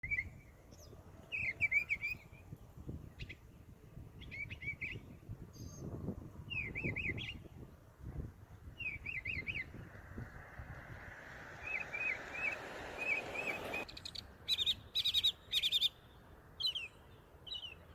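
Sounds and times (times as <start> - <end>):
songbird singing: 0.0 - 17.9
low rumble: 9.4 - 13.8.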